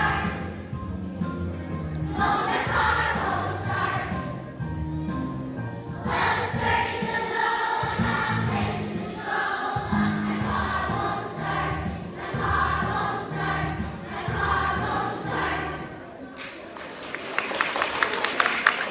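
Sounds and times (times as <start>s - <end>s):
children's choir singing: 0.0s - 0.9s, 2.0s - 4.7s, 5.9s - 16.3s
instrumental accompaniment: 0.0s - 15.9s.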